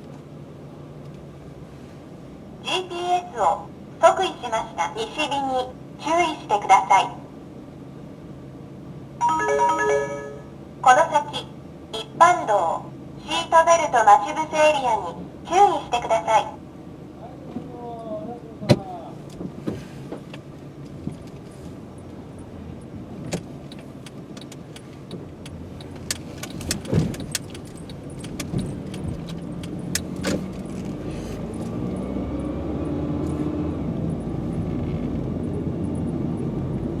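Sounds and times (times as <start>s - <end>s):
road noise: 0.0s - 37.0s
car engine: 16.2s - 37.0s
sharp clicks and rattles: 23.3s - 31.0s.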